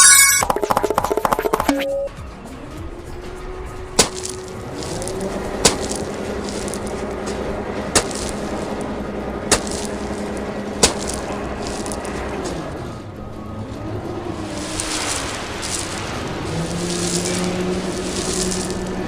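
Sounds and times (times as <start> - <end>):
sharp clacks: 0.0 - 2.1.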